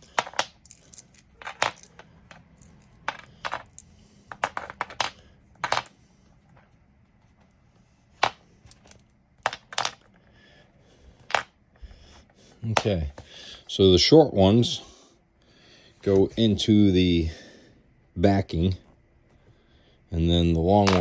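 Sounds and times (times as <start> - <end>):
metal bolts clinking: 0.0 - 5.9, 20.8 - 21.0.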